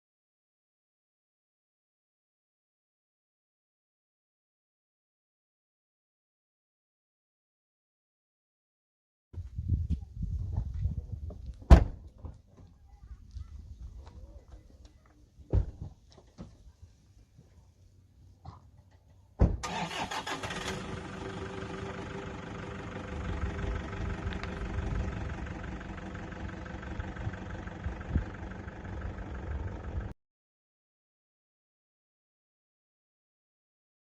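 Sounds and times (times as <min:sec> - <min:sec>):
engine starting and running: 0:18.9 - 0:30.2.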